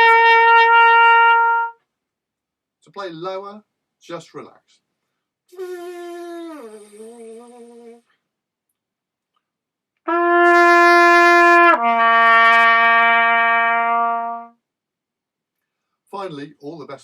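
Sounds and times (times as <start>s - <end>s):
trumpet held notes: 0.0s - 1.8s, 10.1s - 14.5s
buzzed note sliding down: 10.2s - 13.7s.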